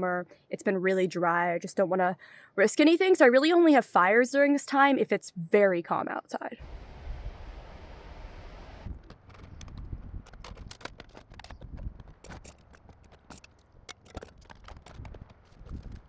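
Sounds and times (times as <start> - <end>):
wind buffeting microphone: 6.6 - 13.0, 14.5 - 16.0
sharp clicks and taps: 9.0 - 16.0.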